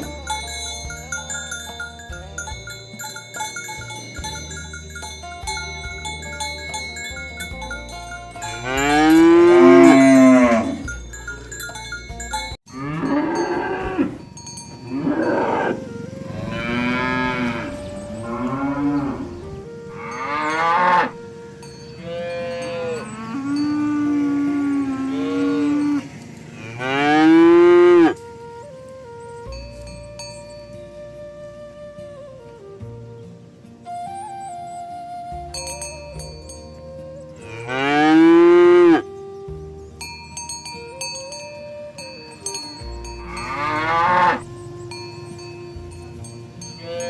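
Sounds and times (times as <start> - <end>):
cattle mooing: 8.4 - 11.0, 12.7 - 21.3, 22.0 - 28.2, 37.4 - 39.0, 43.2 - 44.5.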